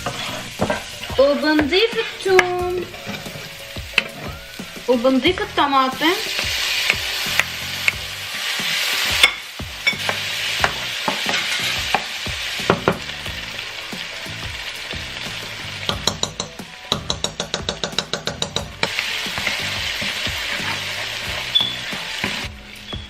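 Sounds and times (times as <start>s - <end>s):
food sizzling in oil: 0.0s - 23.0s
spoon knocking against pot: 15.9s - 18.9s.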